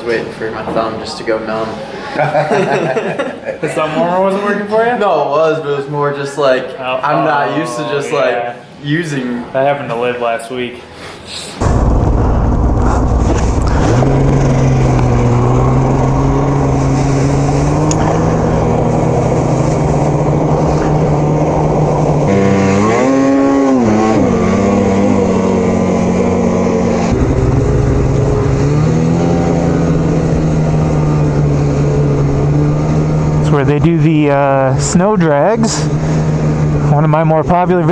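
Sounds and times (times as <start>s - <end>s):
snowmobile engine revving: 12.5s - 37.9s.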